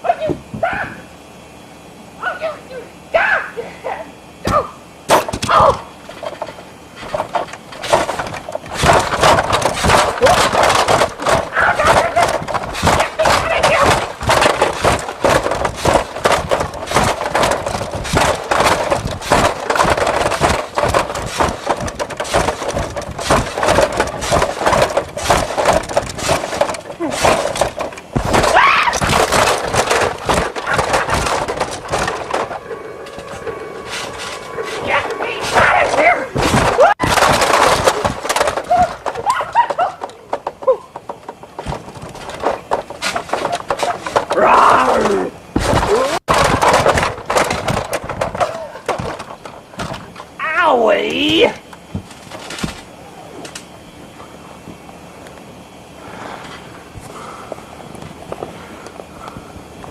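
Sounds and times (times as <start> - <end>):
toys clattering and knocking: 5.1 - 53.8.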